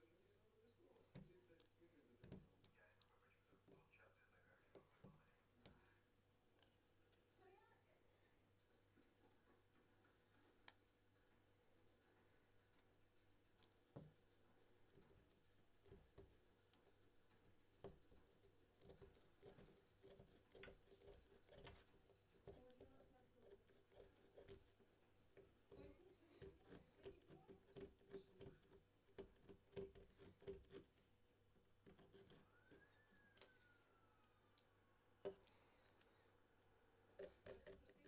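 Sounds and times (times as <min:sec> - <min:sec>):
faint clicks and taps on phone: 0:00.9 - 0:07.4, 0:09.2 - 0:10.9, 0:13.6 - 0:14.3, 0:17.8 - 0:31.0.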